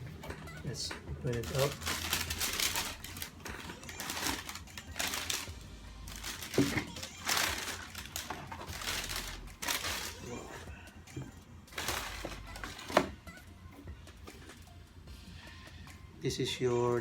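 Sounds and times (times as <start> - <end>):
background music: 0.0 - 17.0.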